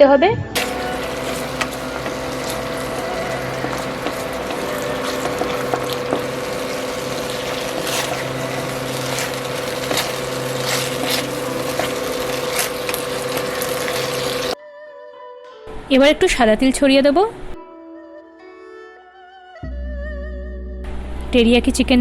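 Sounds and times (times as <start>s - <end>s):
steady hum: 0.4s - 14.6s
chicken sizzling in a pan: 0.6s - 14.6s
spatula scraping a pan: 0.6s - 14.6s.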